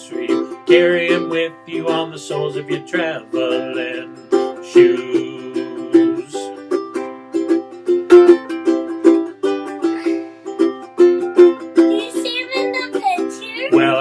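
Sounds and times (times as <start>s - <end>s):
person singing: 0.0s - 6.8s, 12.0s - 14.0s
ukulele chord accompaniment: 0.0s - 14.0s.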